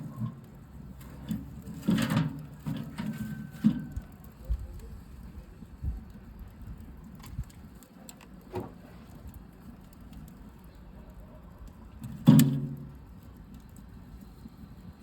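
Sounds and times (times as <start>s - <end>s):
metal stove clunk: 0.0s - 4.1s, 12.0s - 12.9s
wood fire crackling: 0.0s - 15.0s.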